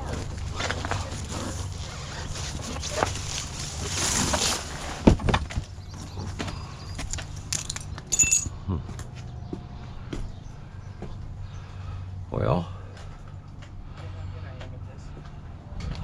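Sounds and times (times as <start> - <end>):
short ringing clink: 7.6 - 8.6.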